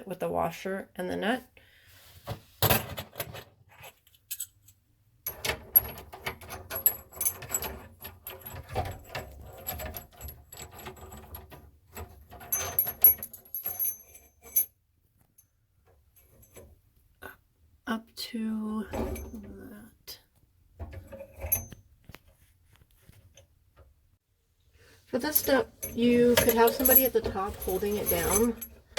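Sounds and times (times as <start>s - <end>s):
metal washer and nut clinking: 3.0s - 16.8s, 19.0s - 19.5s, 20.8s - 22.2s, 25.2s - 28.9s.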